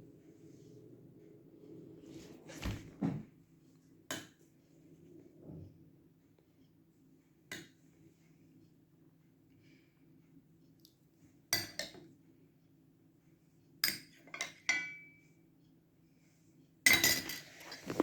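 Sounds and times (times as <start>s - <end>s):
spoon clinking against dishes: 13.8s - 15.2s.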